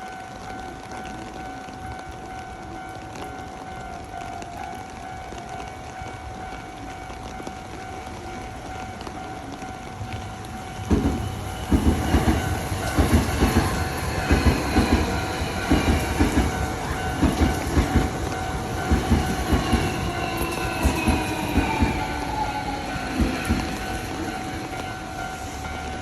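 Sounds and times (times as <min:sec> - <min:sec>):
crossing bell ringing: 0:00.0 - 0:26.0
train wheels clattering: 0:10.2 - 0:26.0.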